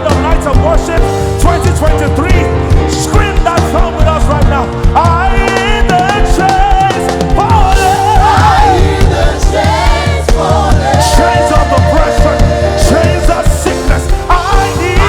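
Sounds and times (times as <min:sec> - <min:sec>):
steady drum beat: 0:00.0 - 0:15.0
melismatic singing with choir: 0:06.3 - 0:15.0.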